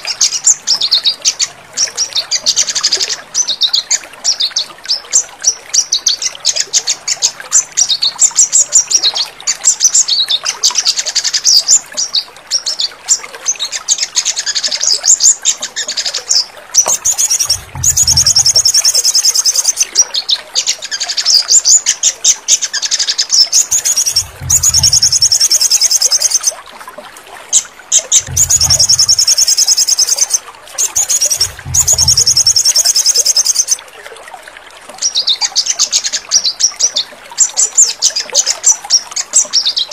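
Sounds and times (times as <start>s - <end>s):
buzzy bird trills: 16.8s - 19.9s, 23.4s - 26.6s, 27.5s - 33.8s
sunbird chirping: 16.8s - 19.9s, 22.9s - 26.6s, 28.0s - 33.8s.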